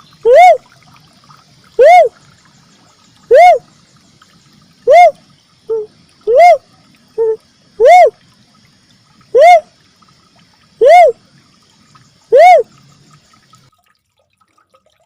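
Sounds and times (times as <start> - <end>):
cuckoo-dove cooing: 0.2 - 0.6, 1.8 - 2.2, 3.3 - 3.6, 4.8 - 6.6, 7.2 - 8.2, 9.3 - 9.7, 10.8 - 11.2, 12.3 - 12.7.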